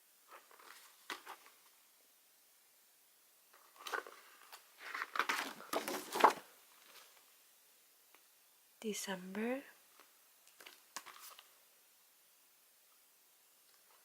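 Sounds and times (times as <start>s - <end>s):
calendar pages rustling: 0.3s - 1.7s, 3.6s - 7.2s, 10.6s - 11.5s.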